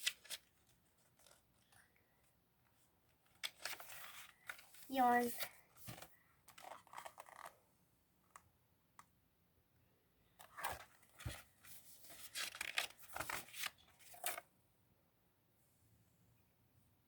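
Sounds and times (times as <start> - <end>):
paper rustling and crinkling: 0.0 - 1.9, 3.2 - 7.5, 10.4 - 14.4.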